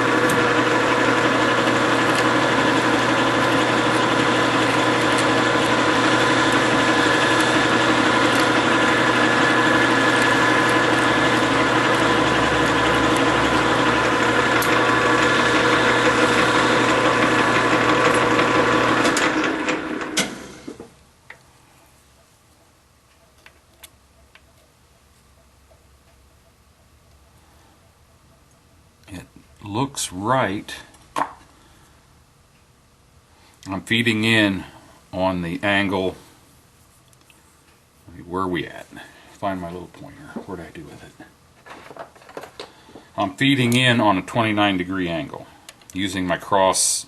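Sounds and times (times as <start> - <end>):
metal lathe motor humming: 0.0 - 20.7.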